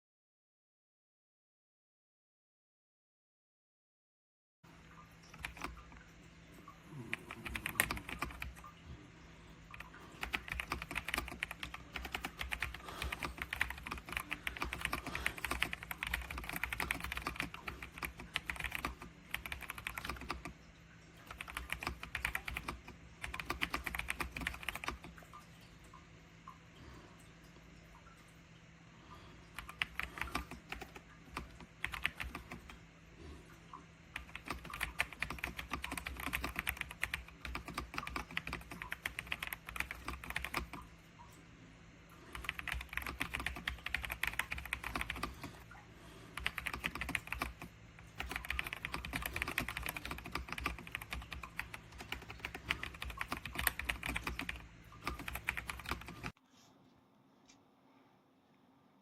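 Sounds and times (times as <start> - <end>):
mechanical keyboard typing: 5.2 - 6.1, 6.9 - 8.8, 9.7 - 20.6, 21.2 - 25.2, 29.5 - 32.8, 34.2 - 40.9, 42.2 - 45.6, 46.3 - 56.4.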